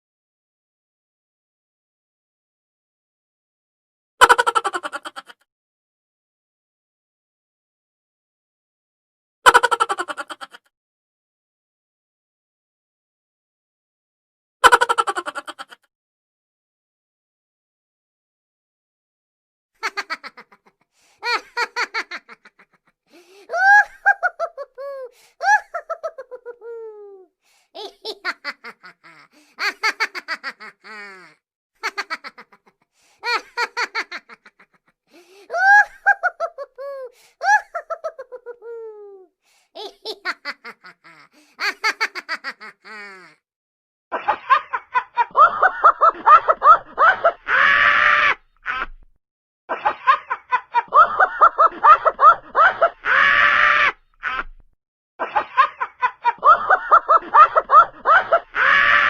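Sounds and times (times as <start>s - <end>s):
breathy laughter: 4.2s - 5.4s, 9.5s - 10.7s, 14.6s - 15.9s, 19.8s - 43.4s, 44.1s - 49.0s, 49.7s - 54.6s, 55.2s - 59.0s
noisy burst of laughter: 44.1s - 49.0s, 49.7s - 54.6s, 55.2s - 59.0s.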